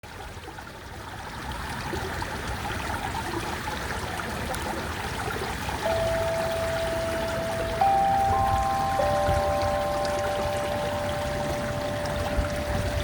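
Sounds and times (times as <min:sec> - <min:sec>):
water flowing and trickling: 0:00.0 - 0:13.0
metallophone note ringing: 0:05.8 - 0:13.0.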